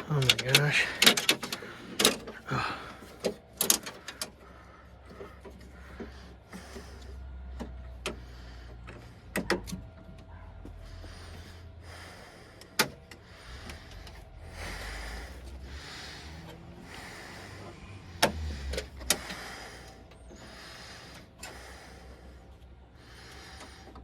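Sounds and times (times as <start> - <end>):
metallic clicks and knocks: 0.0 - 2.4
power window motor humming: 7.0 - 22.0.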